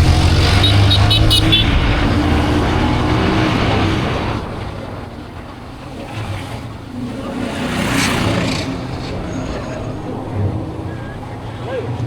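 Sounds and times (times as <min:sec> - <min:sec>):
traffic engines passing: 0:00.0 - 0:12.0.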